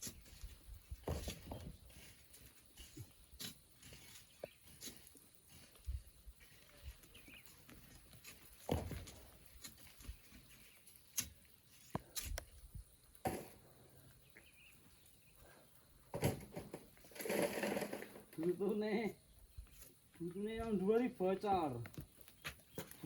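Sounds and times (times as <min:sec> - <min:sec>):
hand tools striking sand and stones: 0:00.0 - 0:06.5, 0:08.2 - 0:13.7.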